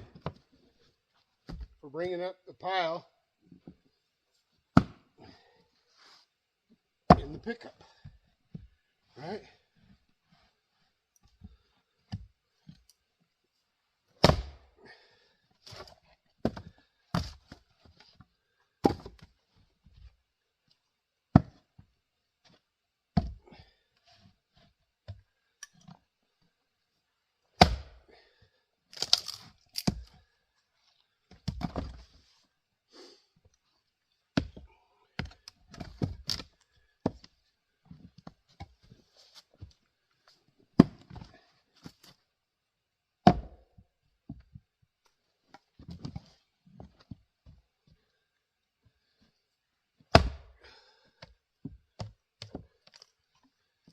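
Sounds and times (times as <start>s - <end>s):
axe splitting wood: 4.7s - 5.1s, 7.1s - 7.5s, 14.2s - 14.7s, 15.7s - 17.5s, 18.8s - 19.3s, 27.6s - 28.0s, 28.9s - 30.1s, 35.2s - 37.2s, 40.8s - 41.2s, 43.2s - 43.6s, 50.1s - 50.6s
split wood pieces falling: 28.9s - 30.1s.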